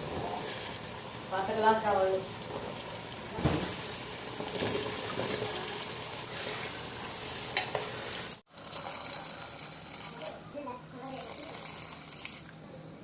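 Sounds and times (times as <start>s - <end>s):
food sizzling in a pan: 0.0s - 10.4s.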